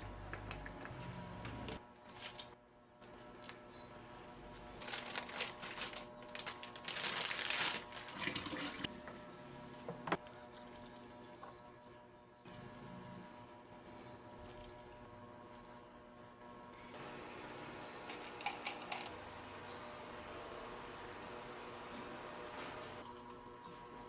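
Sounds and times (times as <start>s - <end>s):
kitchen clicks and rustles: 18.0s - 19.1s.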